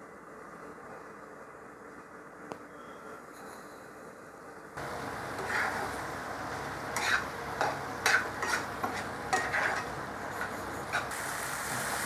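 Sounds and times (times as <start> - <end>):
food sizzling in a pan: 4.8 - 12.0
spoon scraping a pan: 5.4 - 6.0, 6.9 - 11.1.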